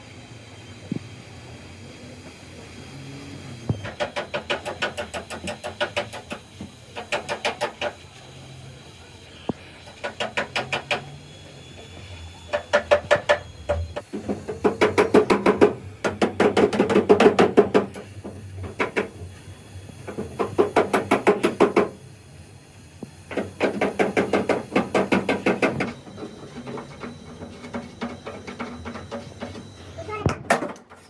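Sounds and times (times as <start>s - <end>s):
rapid hammering on metal: 3.7s - 8.0s, 9.8s - 11.2s, 12.5s - 19.2s, 20.0s - 22.0s, 23.3s - 25.9s.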